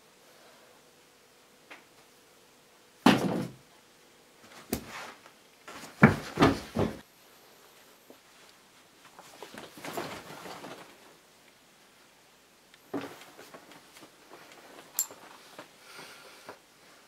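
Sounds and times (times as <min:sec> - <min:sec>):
knocks and thumps: 0:06.0 - 0:07.0.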